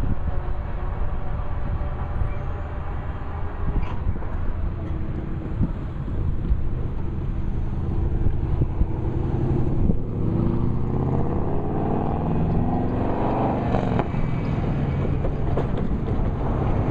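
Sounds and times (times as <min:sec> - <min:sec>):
freight train rumbling past: 0:00.0 - 0:16.9
train knocks: 0:13.7 - 0:16.9.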